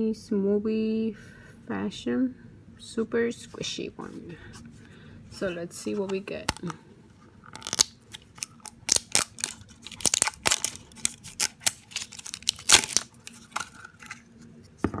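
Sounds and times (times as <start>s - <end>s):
plastic packet tearing and crinkling: 7.5s - 14.3s.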